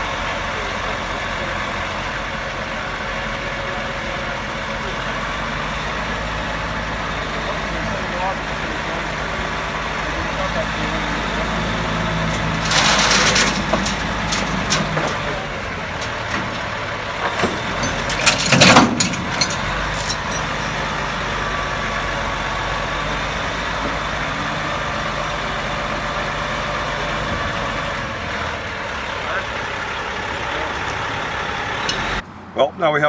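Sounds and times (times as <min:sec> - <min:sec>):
diesel engine idling: 0:00.0 - 0:32.6
cluster of knocks: 0:12.1 - 0:20.8.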